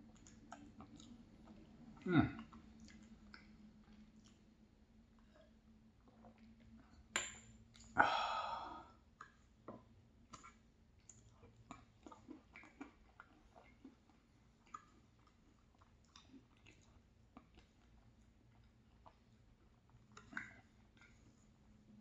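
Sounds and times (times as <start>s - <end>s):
wet mouth clicks from chewing: 0.0s - 4.5s, 9.2s - 21.3s.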